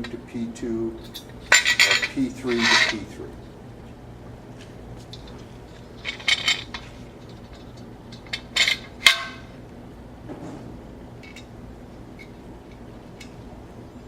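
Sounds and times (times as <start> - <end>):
metal poles clanking together: 1.0 - 3.1, 5.0 - 9.6.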